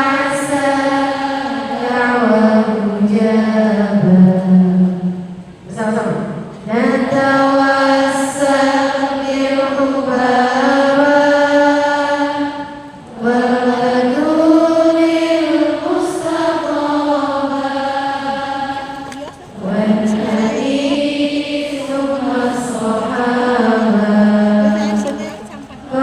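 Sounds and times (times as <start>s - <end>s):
person chanting melodically: 13.2s - 26.0s.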